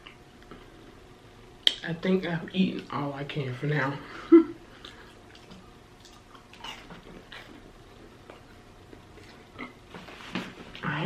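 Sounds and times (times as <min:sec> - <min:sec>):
lip smacks and mouth clicks: 0:04.8 - 0:07.6.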